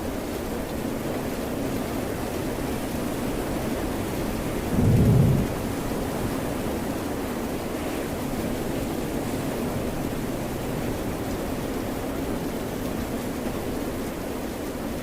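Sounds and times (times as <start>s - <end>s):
steady rain: 0.0s - 15.0s
short deep rumble: 4.6s - 6.2s
ocean surf: 4.6s - 6.4s.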